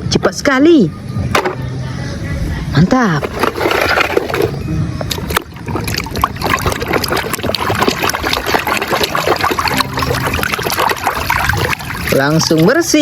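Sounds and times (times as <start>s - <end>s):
water splashing and trickling: 3.2s - 13.0s.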